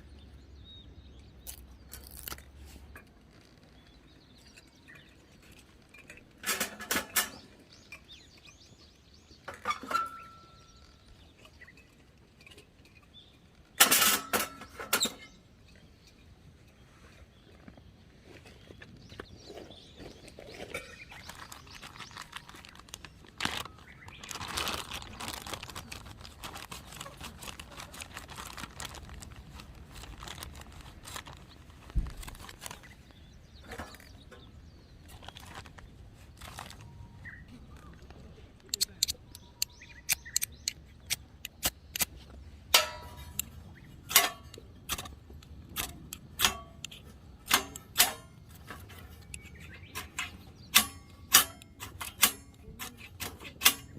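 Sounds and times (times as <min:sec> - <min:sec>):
dry kindling cracking: 0:01.1 - 0:15.4, 0:17.7 - 0:53.9
rustling and handling noise: 0:15.9 - 0:39.5, 0:41.4 - 0:53.9.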